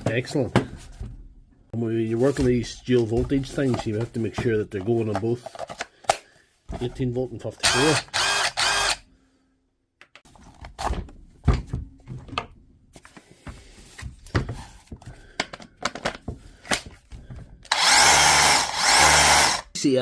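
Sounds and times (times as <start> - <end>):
plastic tools knocking and clicking: 14.3 - 18.9.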